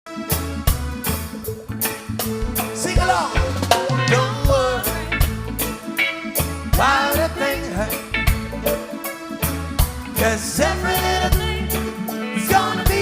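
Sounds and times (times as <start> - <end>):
reggae drum beat and bass: 0.1 - 13.0
person singing: 2.8 - 5.4, 6.7 - 8.1, 10.2 - 13.0.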